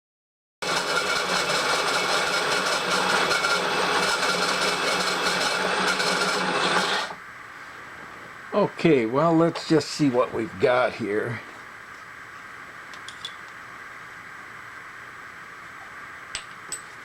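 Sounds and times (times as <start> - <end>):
machine tool cutting metal: 0.6 - 7.2.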